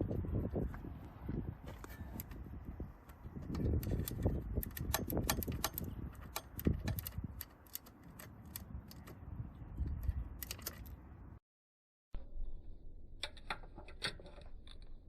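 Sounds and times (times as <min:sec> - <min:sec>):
low rumble: 0:12.2 - 0:13.8.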